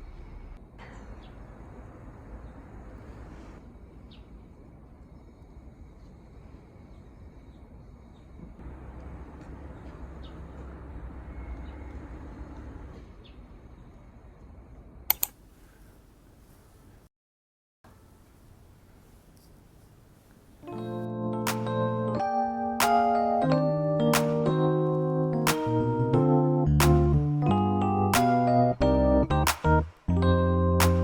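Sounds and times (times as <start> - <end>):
outdoor background hum: 0.0 - 17.1
sharp double click: 15.1 - 15.4.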